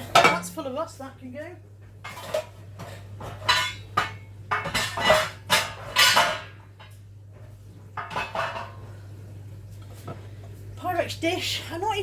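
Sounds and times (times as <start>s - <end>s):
metal baking tins clattering: 0.0s - 0.7s, 2.1s - 6.6s, 8.0s - 8.8s
low steady hum: 0.0s - 12.0s.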